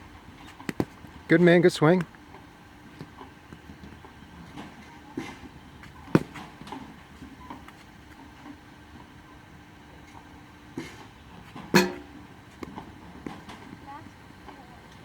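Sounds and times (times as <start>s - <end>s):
baseball bat hitting ball: 6.1s - 6.6s, 11.7s - 13.4s.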